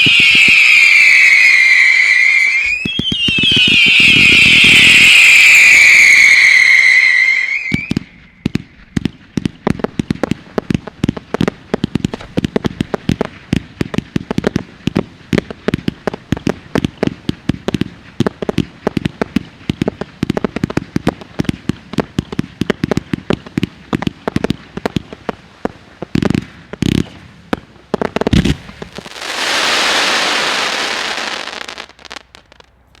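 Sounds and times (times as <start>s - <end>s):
firework whistling shriek: 0.0s - 9.1s, 28.3s - 33.0s
fireworks crackling pops: 0.0s - 33.0s
firework hiss: 10.2s - 33.0s.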